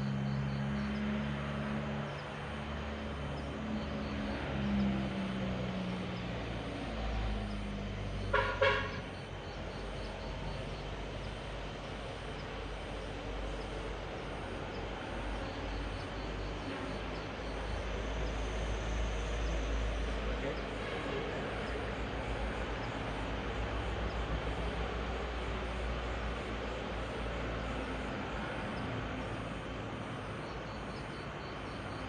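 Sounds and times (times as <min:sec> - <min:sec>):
road traffic rumble: 0:00.0 - 0:32.0
vehicle horn toots: 0:08.3 - 0:09.0.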